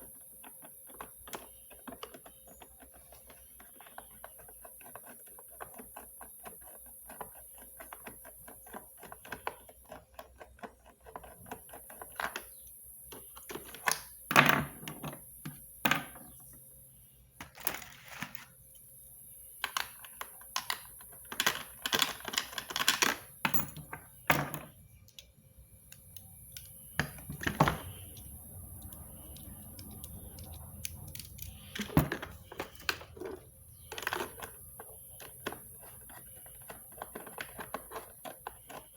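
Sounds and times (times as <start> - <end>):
plastic and metal parts clicking: 0.0 - 14.1, 25.9 - 38.9
parts clattering: 19.6 - 24.8, 26.5 - 38.9.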